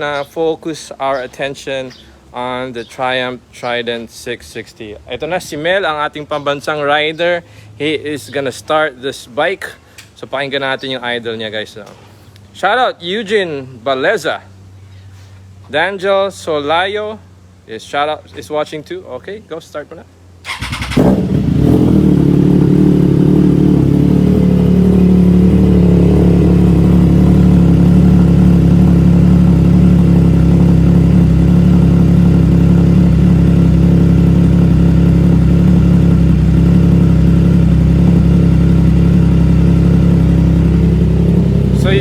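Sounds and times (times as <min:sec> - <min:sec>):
motorcycle engine idling: 0:20.4 - 0:42.0.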